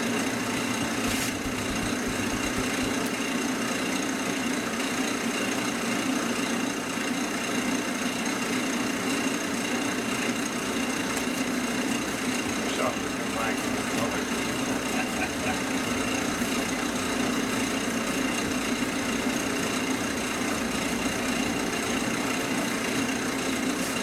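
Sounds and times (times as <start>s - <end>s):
wood lathe motor hum: 0.4s - 3.2s, 10.4s - 24.0s.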